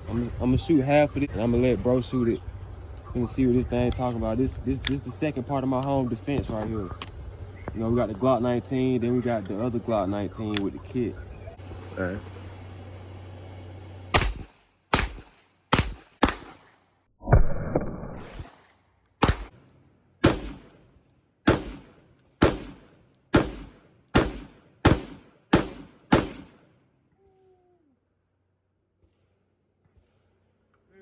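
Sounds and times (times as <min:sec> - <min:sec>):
pistol shots echoing: 0:14.2 - 0:16.8, 0:19.2 - 0:19.6, 0:20.2 - 0:20.9, 0:21.5 - 0:26.7.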